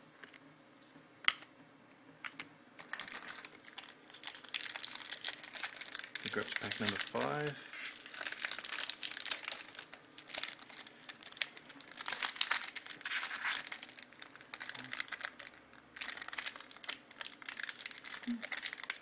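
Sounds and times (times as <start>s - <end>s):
card pack wrapper crinkling: 2.8s - 19.0s.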